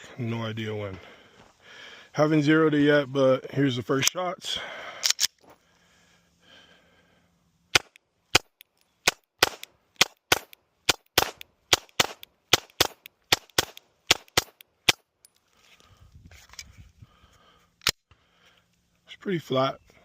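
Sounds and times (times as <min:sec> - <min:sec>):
pistol gunshots: 0:07.7 - 0:15.0.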